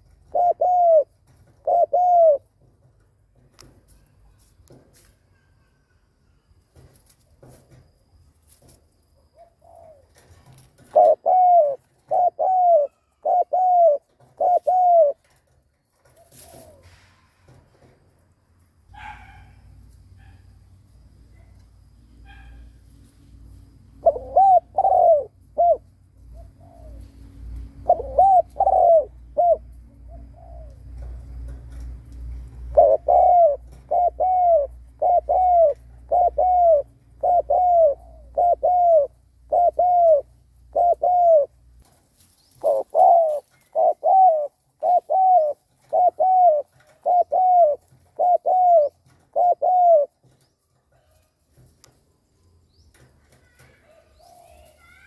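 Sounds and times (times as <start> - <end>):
dove cooing: 0.0 - 2.7, 9.1 - 17.0, 23.9 - 31.8, 32.4 - 41.7, 42.5 - 50.4.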